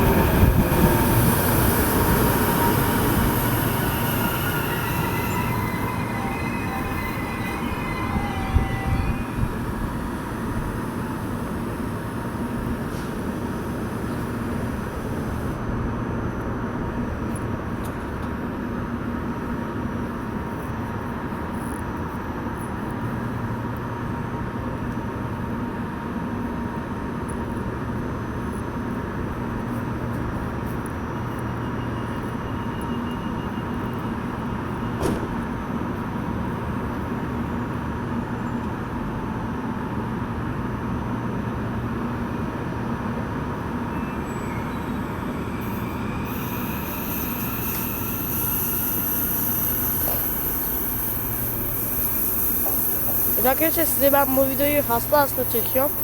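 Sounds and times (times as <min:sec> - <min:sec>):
train wheels rumbling on rails: 0:00.0 - 0:20.2, 0:42.0 - 0:56.0.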